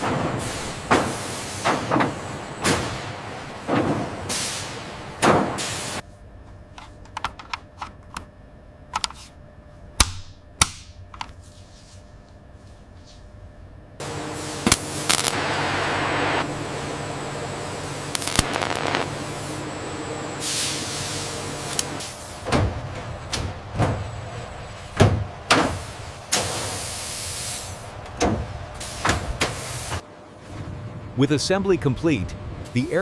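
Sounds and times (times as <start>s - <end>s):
steady machine hum: 0.0s - 33.0s
hissing air: 14.0s - 16.6s, 17.8s - 19.7s, 20.4s - 22.4s.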